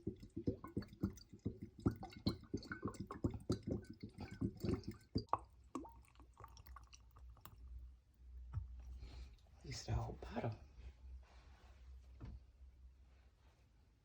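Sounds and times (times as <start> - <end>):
vinegar pouring in gurgling pulses: 0.0 - 7.8.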